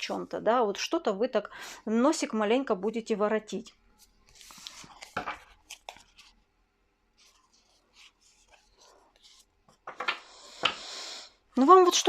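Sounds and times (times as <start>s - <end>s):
cards rustling: 4.0s - 6.5s, 7.2s - 10.2s.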